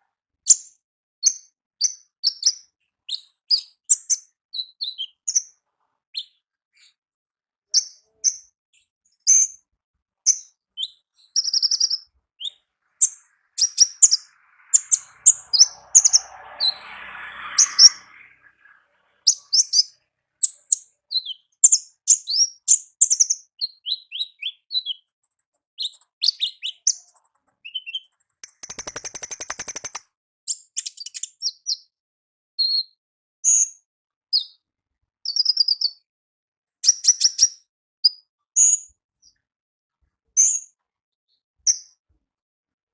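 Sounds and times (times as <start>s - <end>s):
bird chirping: 10.8s - 16.3s, 28.4s - 30.0s
bird buzzy rattle: 28.4s - 30.0s.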